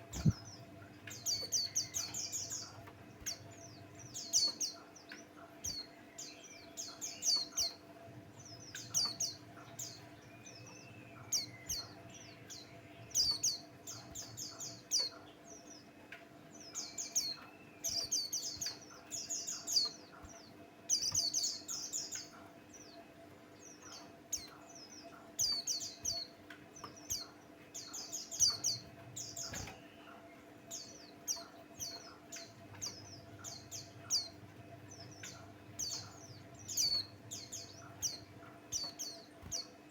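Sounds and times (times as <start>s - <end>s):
bird chirping: 0.0s - 39.9s
faint steady hum: 0.0s - 39.9s.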